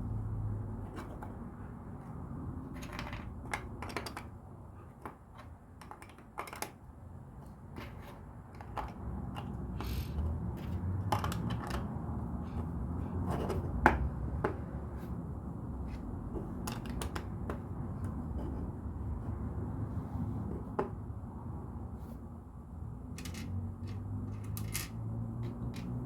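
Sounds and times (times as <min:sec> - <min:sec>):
plastic bricks clicking and rattling: 0:02.7 - 0:04.3, 0:05.8 - 0:06.8, 0:23.2 - 0:26.0.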